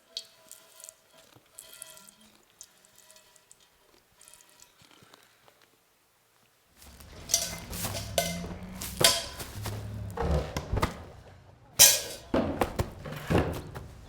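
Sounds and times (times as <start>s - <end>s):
sharp knocks and thuds: 7.0s - 11.2s, 12.2s - 14.0s.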